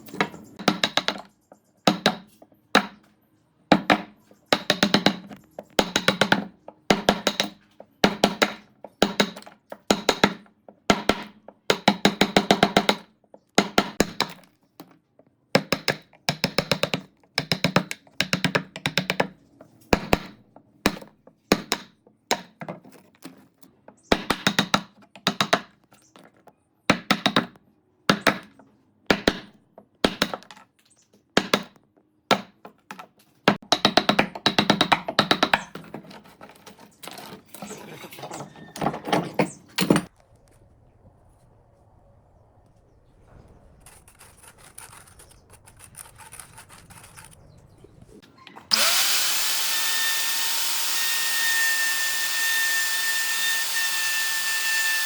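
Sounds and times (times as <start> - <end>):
rapid tapping and knocking on wood: 3.7 - 23.0, 24.1 - 30.6, 31.4 - 36.3.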